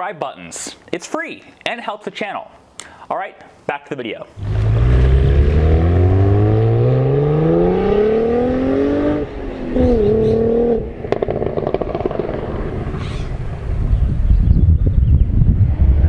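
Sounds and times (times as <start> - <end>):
car engine accelerating: 4.4 - 13.1
exhaust crackles: 4.4 - 13.7.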